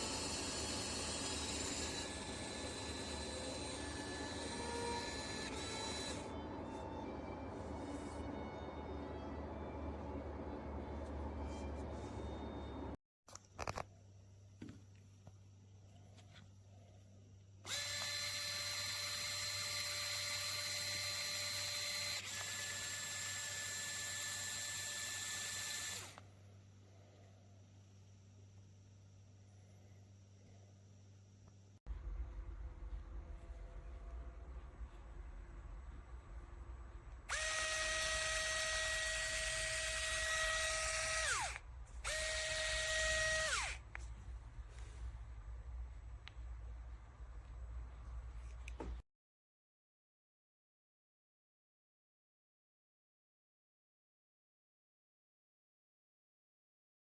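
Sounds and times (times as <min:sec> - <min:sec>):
rotary drill motor whine: 0:00.0 - 0:06.4, 0:17.7 - 0:26.2, 0:37.3 - 0:44.0.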